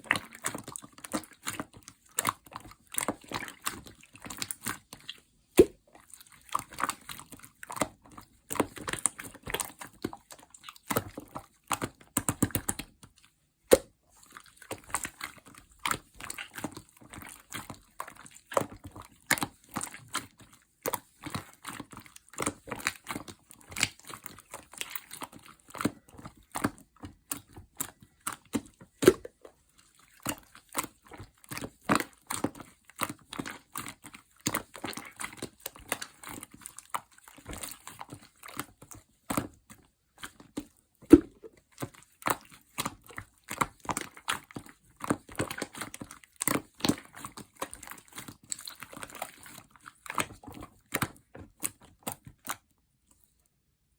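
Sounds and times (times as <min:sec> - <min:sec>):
sticky slime squished by hand: 0:00.0 - 0:53.1.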